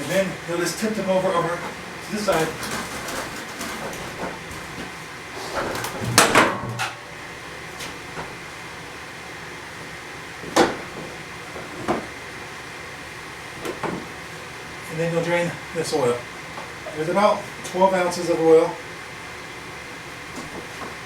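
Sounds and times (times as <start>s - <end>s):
push mower clunking and rattling: 0.8s - 7.0s.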